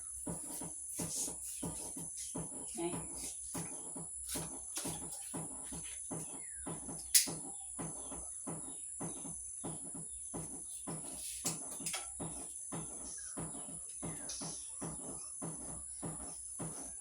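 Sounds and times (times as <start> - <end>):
soft regular knocking: 0.0 - 17.0
bird chirps: 4.4 - 17.0
sharp click: 7.0 - 7.4.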